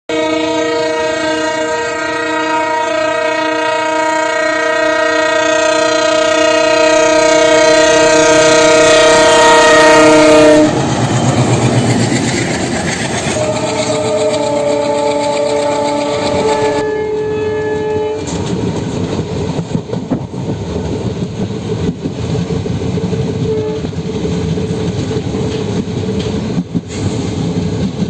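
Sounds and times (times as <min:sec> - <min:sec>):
locomotive horn blast: 0:00.1 - 0:10.8, 0:13.2 - 0:18.4, 0:23.4 - 0:23.9
train rumbling on tracks: 0:00.1 - 0:28.0.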